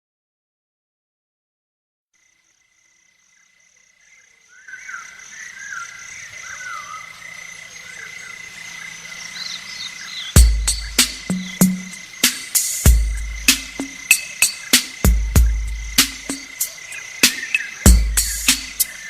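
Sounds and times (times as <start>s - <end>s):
insects chirping: 2.2s - 19.0s
warbling frog-like calls: 4.5s - 19.0s
heavy drum hit: 10.4s - 14.1s, 14.8s - 16.5s, 17.9s - 18.8s.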